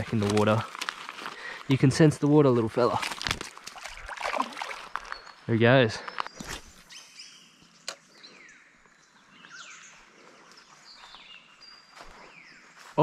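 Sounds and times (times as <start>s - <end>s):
birds whistling: 4.0s - 12.8s.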